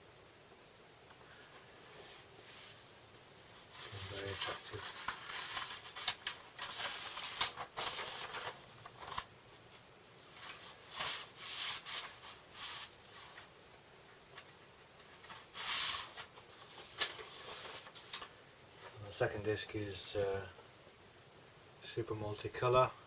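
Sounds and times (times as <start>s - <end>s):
vinyl records rustling and sliding: 1.2s - 19.5s.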